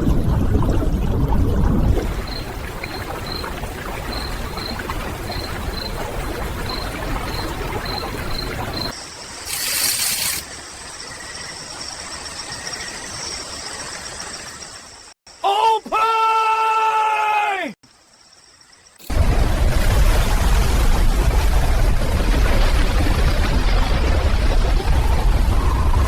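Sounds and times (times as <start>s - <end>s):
running water: 0.0s - 10.7s.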